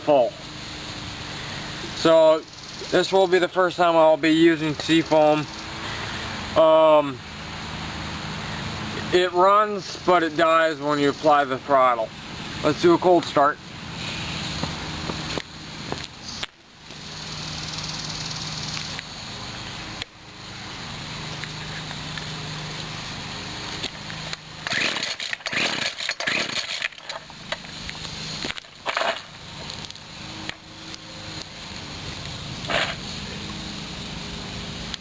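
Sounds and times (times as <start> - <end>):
two-stroke string trimmer engine: 21.3 - 35.0.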